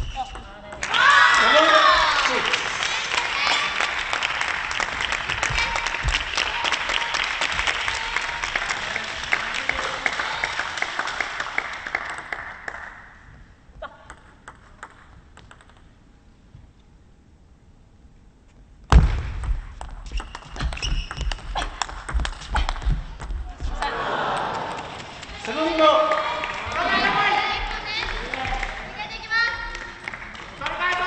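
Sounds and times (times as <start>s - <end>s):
crowd applause: 1.0s - 13.0s, 23.7s - 31.0s.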